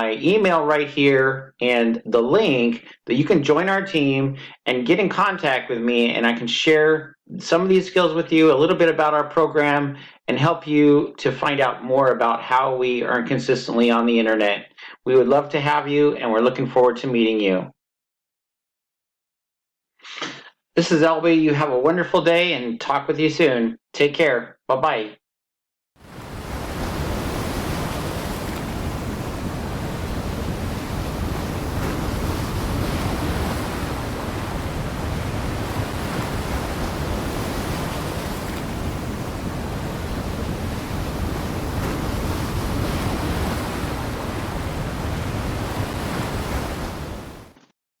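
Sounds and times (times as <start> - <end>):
steady rushing noise: 26.1 - 47.0.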